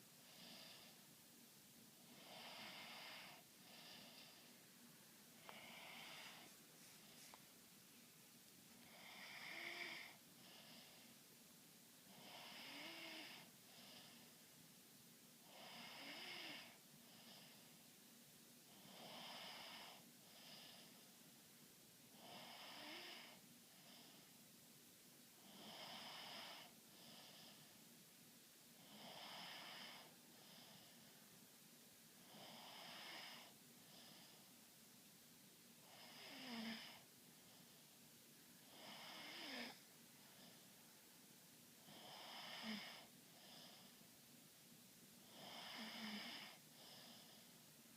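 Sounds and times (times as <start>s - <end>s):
faint snoring: 0.2s - 1.0s, 2.0s - 4.5s, 5.4s - 7.4s, 8.8s - 11.2s, 12.1s - 14.4s, 15.4s - 17.8s, 18.6s - 21.2s, 22.1s - 24.4s, 25.4s - 27.8s, 28.8s - 31.2s, 32.2s - 34.5s, 35.8s - 37.8s, 38.6s - 40.7s, 41.8s - 44.0s, 45.2s - 47.6s
faint breath: 2.0s - 7.6s, 12.1s - 14.5s, 45.4s - 47.7s.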